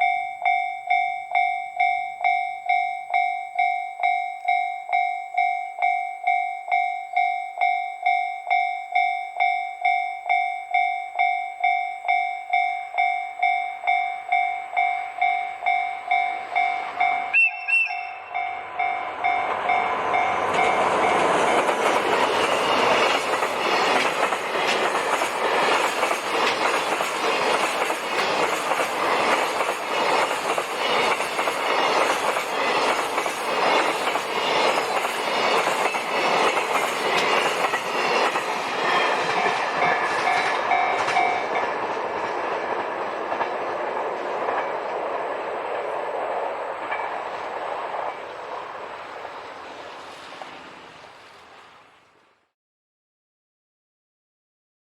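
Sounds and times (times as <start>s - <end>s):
level crossing alarm dinging: 0.0s - 21.7s
train passing: 0.0s - 52.5s
locomotive horn toot: 17.2s - 18.6s
wheels clattering over rail joints: 18.6s - 51.0s.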